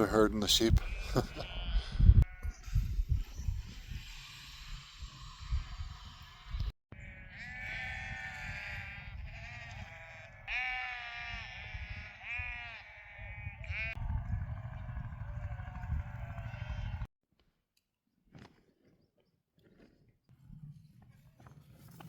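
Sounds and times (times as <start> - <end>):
wind rumbling on microphone: 0.0 - 17.1
sheep bleating: 0.7 - 2.6, 6.9 - 14.0, 15.2 - 17.1.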